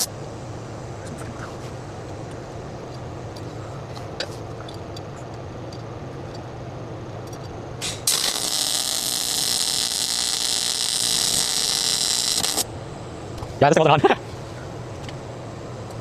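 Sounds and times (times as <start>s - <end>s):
electric arc welding hiss: 7.8s - 12.7s.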